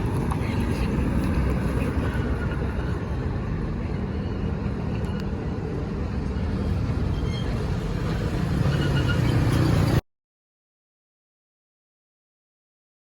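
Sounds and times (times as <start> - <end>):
road noise: 0.0 - 10.0.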